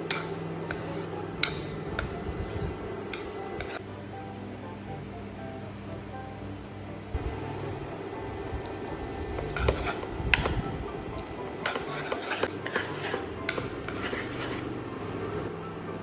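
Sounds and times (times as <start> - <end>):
utensils scraping a pan: 0.0 - 3.8, 8.5 - 15.5.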